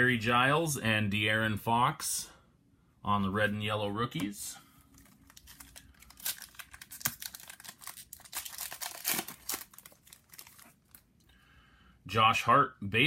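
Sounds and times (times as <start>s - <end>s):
plastic wrapper crinkling: 4.8s - 11.2s.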